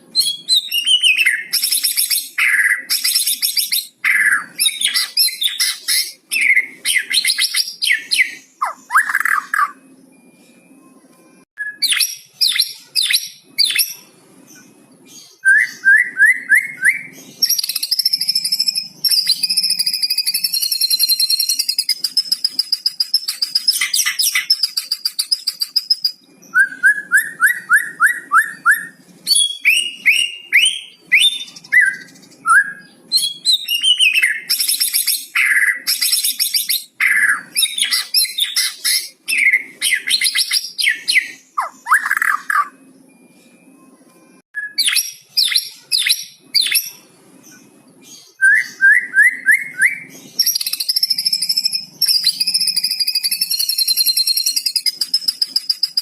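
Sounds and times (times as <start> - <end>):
songbird singing varied song: 11.6 - 43.2, 44.6 - 56.0.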